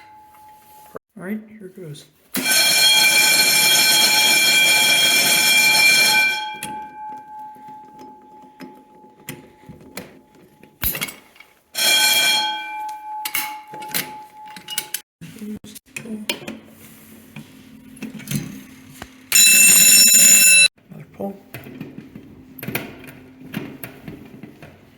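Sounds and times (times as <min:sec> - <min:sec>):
fire alarm sounding: 0:02.4 - 0:10.4, 0:11.8 - 0:15.0, 0:19.3 - 0:20.7.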